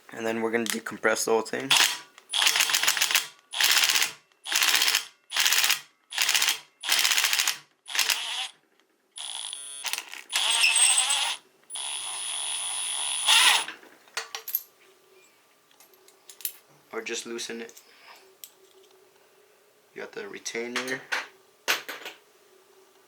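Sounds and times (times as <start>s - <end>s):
power tool whining: 7.9s - 8.6s, 9.2s - 13.7s.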